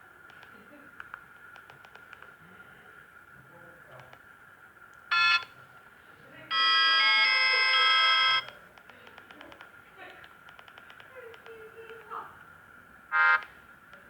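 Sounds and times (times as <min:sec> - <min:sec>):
faint clicks: 0:00.2 - 0:02.4, 0:04.0 - 0:04.2, 0:08.4 - 0:12.5
electronic ringtone melody: 0:05.1 - 0:05.4, 0:06.5 - 0:08.4.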